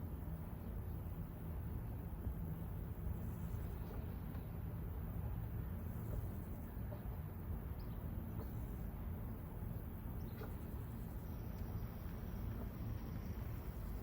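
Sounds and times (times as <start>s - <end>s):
distant combine harvesters rumbling: 0.0s - 14.0s.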